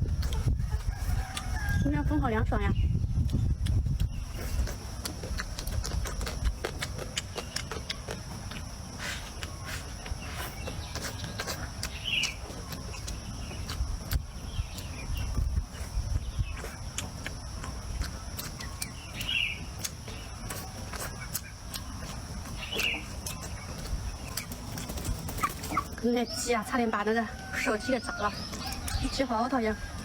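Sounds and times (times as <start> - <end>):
chewing: 0.0 - 1.8, 3.2 - 25.9
wind on microphone: 0.0 - 6.6, 13.7 - 16.8
bird chirps: 18.4 - 26.4.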